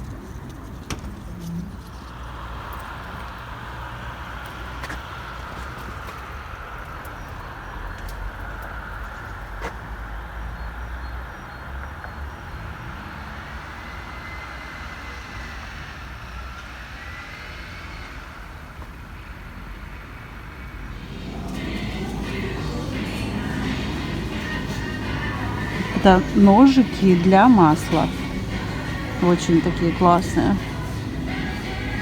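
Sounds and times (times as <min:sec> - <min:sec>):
car engine and road rumble: 0:20.9 - 0:32.0.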